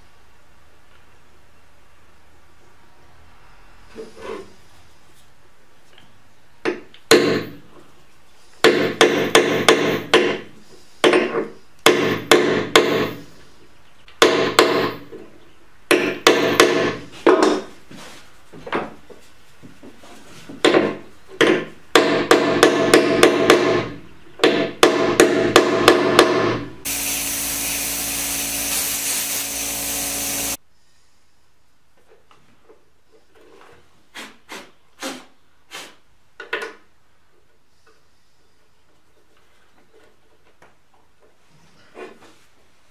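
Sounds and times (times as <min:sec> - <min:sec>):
steady machine noise: 0:26.9 - 0:30.6
woodworking tool bursts: 0:26.9 - 0:30.6.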